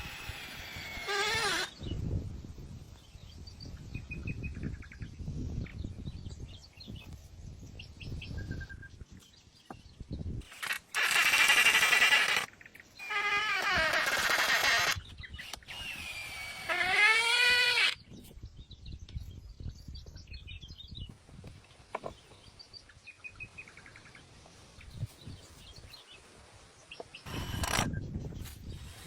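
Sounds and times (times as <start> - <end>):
faint high bird chirps: 3.0 - 10.3.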